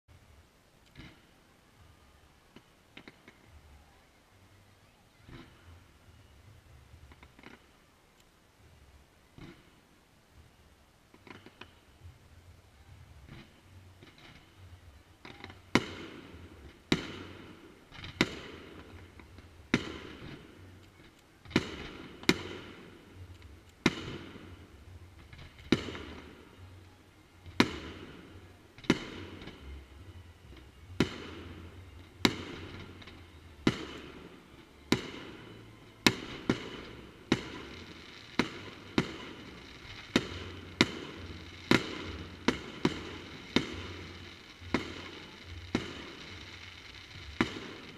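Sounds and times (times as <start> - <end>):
fireworks bursting: 0.8 - 47.9
fireworks crackle: 0.8 - 47.9.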